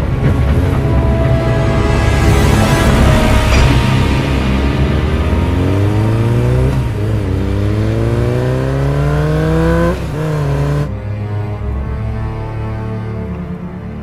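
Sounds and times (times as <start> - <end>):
motor engine revving: 2.5 - 10.9.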